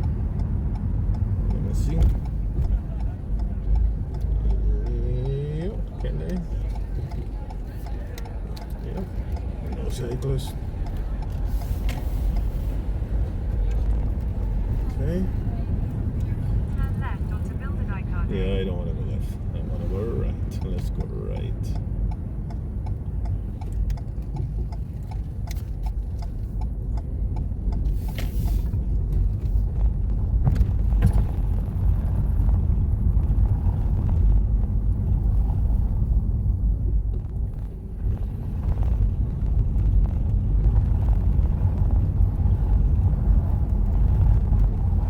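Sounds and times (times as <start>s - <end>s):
road and engine rumble in car: 0.0s - 45.0s
turn signal ticking: 0.0s - 45.0s.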